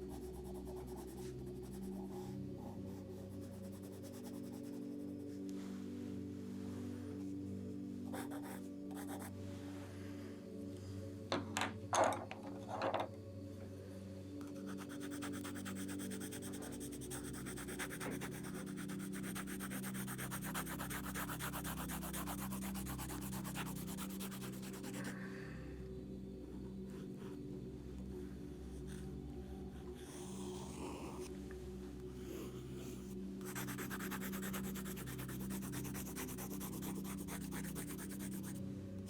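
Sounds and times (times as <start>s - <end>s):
soft background music: 0.0s - 39.0s
pencil scratching on paper: 0.1s - 5.2s, 8.1s - 9.3s, 14.6s - 25.1s, 32.4s - 38.6s.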